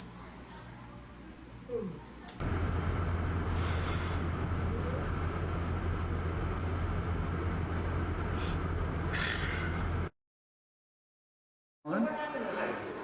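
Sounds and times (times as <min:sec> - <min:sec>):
low mechanical hum and rumble: 0:00.0 - 0:10.1.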